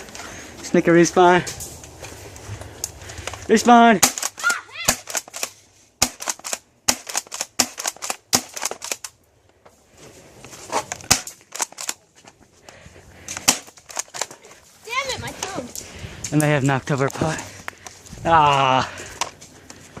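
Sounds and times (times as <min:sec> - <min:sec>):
airsoft guns firing: 0:04.0 - 0:09.1, 0:11.0 - 0:12.0, 0:13.4 - 0:14.3.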